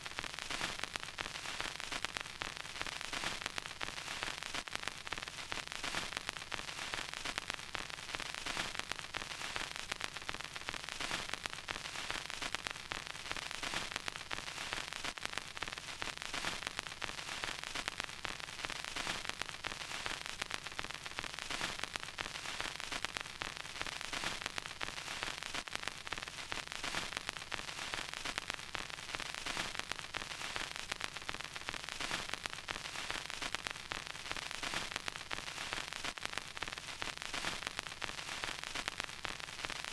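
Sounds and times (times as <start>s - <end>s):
vinyl crackles and pops: 0.0s - 39.9s
vinyl record hiss: 0.0s - 39.9s.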